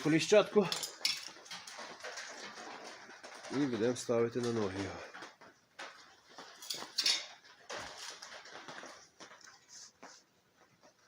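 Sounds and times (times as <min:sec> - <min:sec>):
metal parts clinking and scraping: 0:00.0 - 0:02.9, 0:06.4 - 0:07.4.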